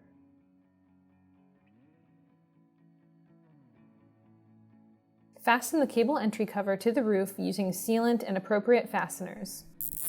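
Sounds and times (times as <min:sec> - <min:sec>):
soft guitar music: 0:00.0 - 0:05.4.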